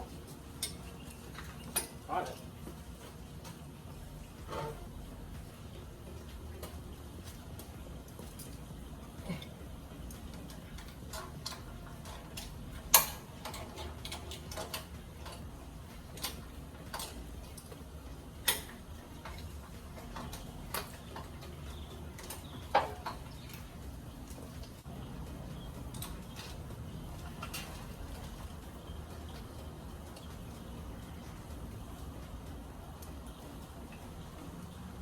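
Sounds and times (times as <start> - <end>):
hand tool clicks and metal knocks: 10.7 - 15.4.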